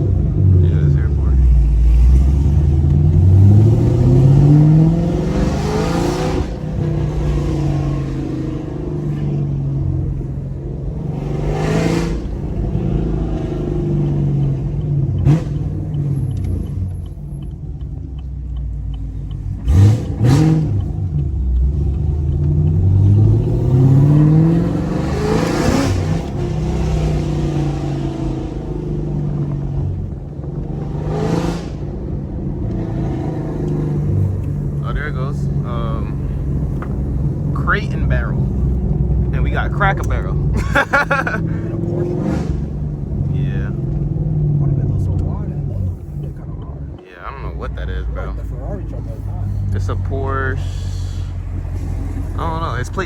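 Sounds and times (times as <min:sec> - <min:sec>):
car engine accelerating through gears: 0:00.0 - 0:53.0
engine rev blip: 0:18.2 - 0:28.9.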